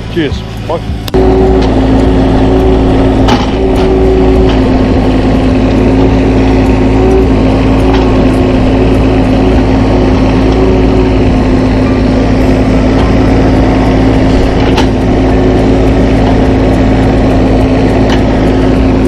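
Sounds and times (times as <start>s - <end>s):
machinery engine running: 0.0s - 19.0s
sharp knocks: 17.6s - 18.4s.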